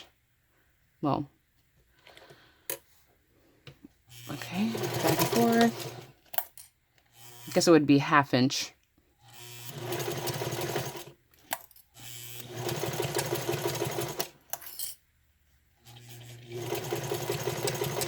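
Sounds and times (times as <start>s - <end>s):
sewing machine stitching: 4.1s - 6.2s, 9.3s - 11.2s, 12.0s - 14.4s, 15.8s - 18.0s.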